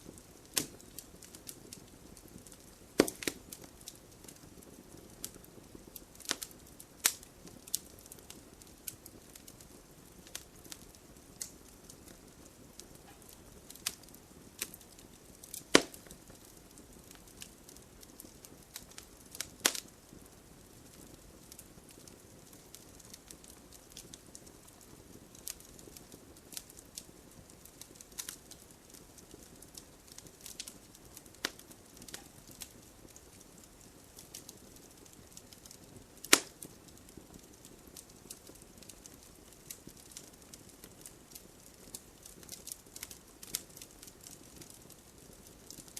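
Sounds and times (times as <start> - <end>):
wood fire crackling: 0.0 - 45.9
sharp loud pops: 3.0 - 3.4, 15.7 - 16.0.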